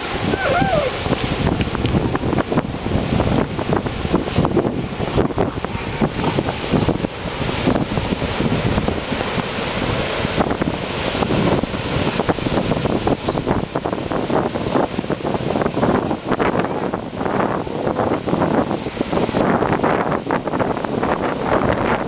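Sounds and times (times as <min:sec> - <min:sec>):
ocean surf: 0:00.0 - 0:22.0
wind buffeting microphone: 0:00.0 - 0:22.0.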